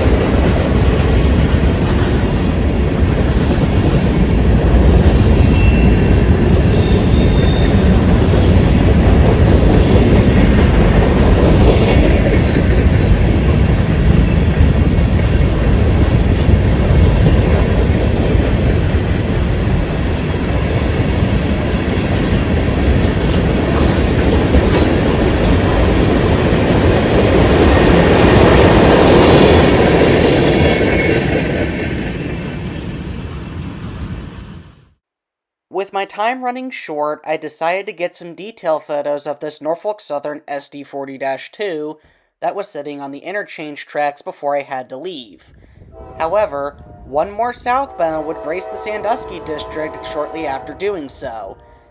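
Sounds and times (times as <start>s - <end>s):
freight train wheels rumbling on rails: 0.0s - 34.9s
train wheels squealing: 3.9s - 8.9s, 16.4s - 17.6s, 24.9s - 27.2s, 29.0s - 31.6s.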